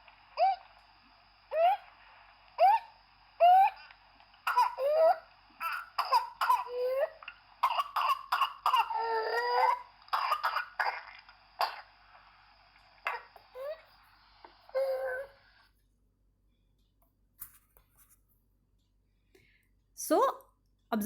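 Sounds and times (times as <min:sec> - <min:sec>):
rapid coughing: 0:04.4 - 0:11.9.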